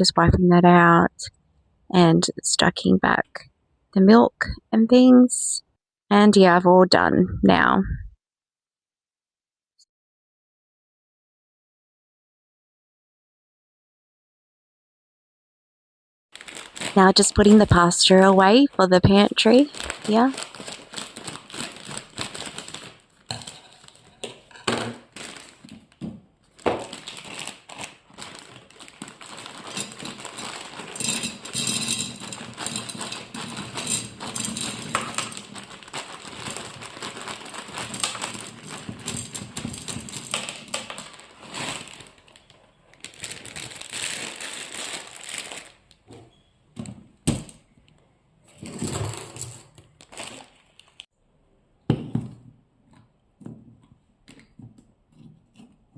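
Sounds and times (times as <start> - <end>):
dry pasta rattling: 16.4 - 17.6, 19.2 - 24.3, 25.0 - 25.7, 26.7 - 45.9.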